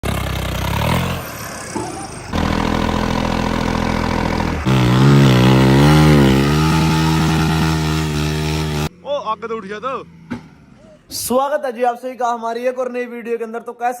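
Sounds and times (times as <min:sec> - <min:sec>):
vehicle engines revving: 0:00.0 - 0:11.1.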